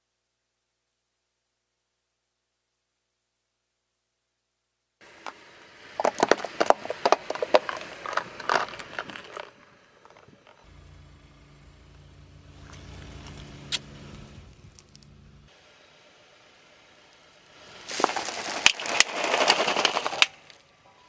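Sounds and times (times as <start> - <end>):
low engine hum: 5.0 - 19.1
things crushed under tyres: 5.2 - 10.7, 17.6 - 20.8.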